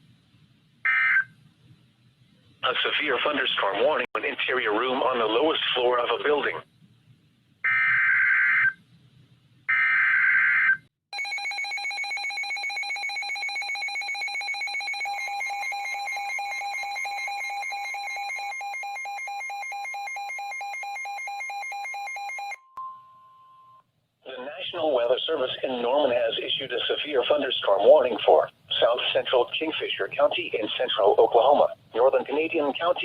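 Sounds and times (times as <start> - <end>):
rapid pulsing alarm beep: 11.2 - 22.6.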